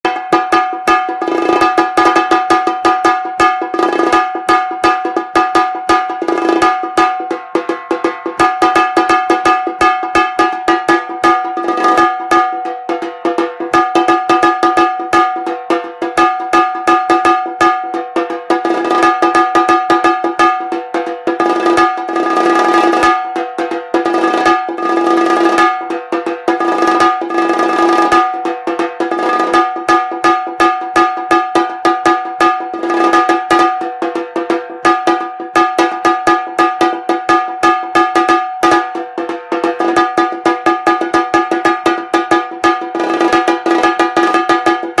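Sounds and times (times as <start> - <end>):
drum roll with thin sticks: 0.1 - 45.0.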